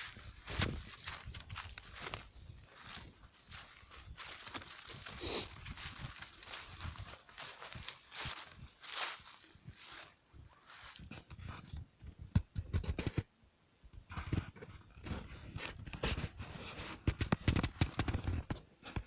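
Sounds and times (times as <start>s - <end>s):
footsteps on dirt trail: 0.0s - 11.6s.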